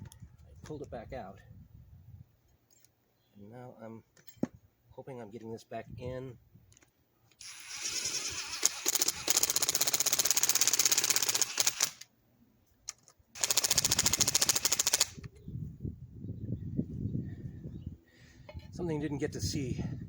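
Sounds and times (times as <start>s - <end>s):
fast mechanical rattling: 7.4s - 12.0s, 13.4s - 15.2s.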